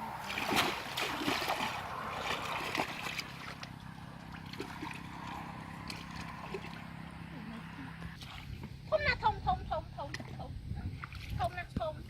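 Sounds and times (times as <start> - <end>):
steady low hum: 0.0 - 12.0
water splashing and sloshing: 0.0 - 12.0.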